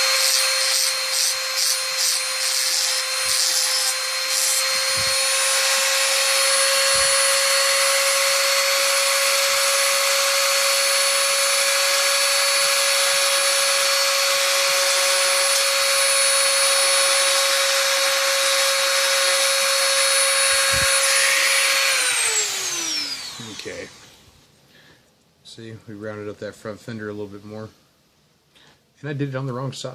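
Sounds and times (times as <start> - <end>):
rotary tool grinding: 0.0 - 24.2.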